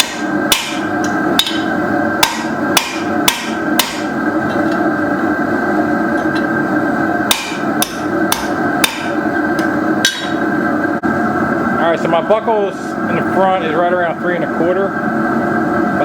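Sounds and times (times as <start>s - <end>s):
hammer striking metal on anvil: 0.0s - 4.1s, 7.3s - 10.4s
steady hum: 0.0s - 16.0s.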